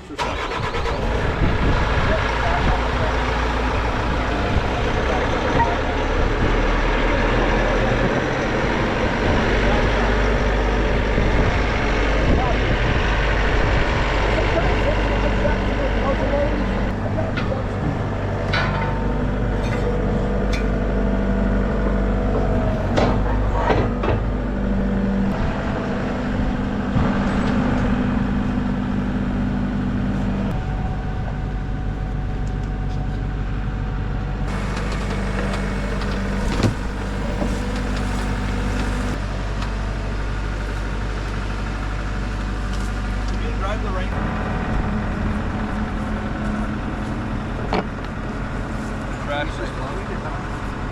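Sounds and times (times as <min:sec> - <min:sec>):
engine idling: 0:00.0 - 0:50.9
knocks and clanks: 0:16.8 - 0:20.9, 0:21.8 - 0:24.6, 0:34.5 - 0:39.2.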